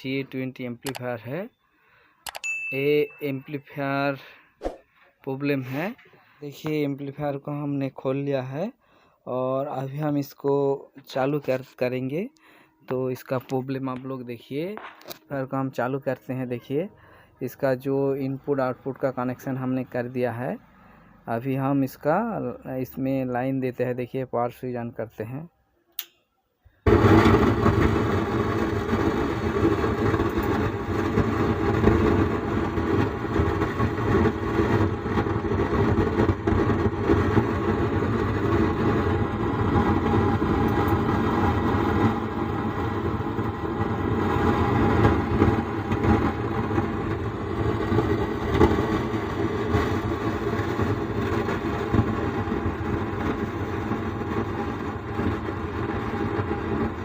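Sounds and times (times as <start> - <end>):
speaker crackling and rumbling: 26.9 - 57.0.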